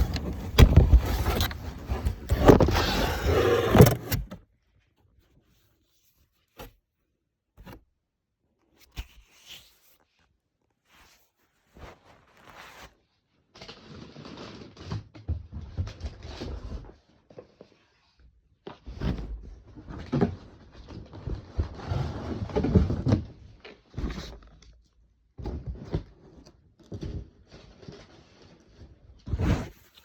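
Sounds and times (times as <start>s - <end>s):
packaging rustling and scraping: 0.0s - 4.4s.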